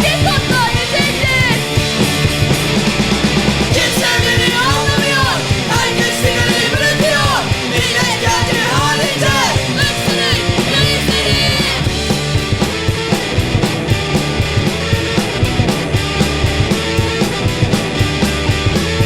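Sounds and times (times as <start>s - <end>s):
punk rock band playing: 0.0s - 19.0s
steady drum beat: 0.0s - 19.0s
person singing: 3.7s - 11.9s.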